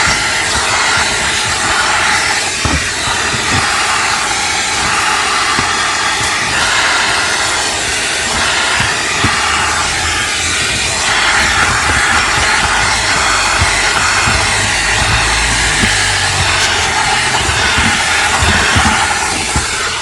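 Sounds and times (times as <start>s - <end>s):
vacuum cleaner motor running: 0.0s - 20.0s.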